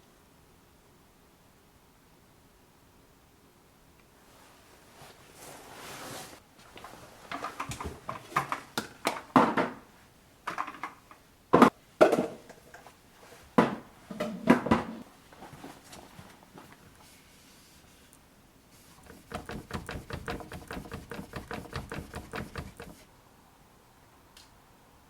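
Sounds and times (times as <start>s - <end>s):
soft rustle: 4.1s - 8.4s, 15.1s - 19.2s
household items knocking and clattering: 19.0s - 23.1s.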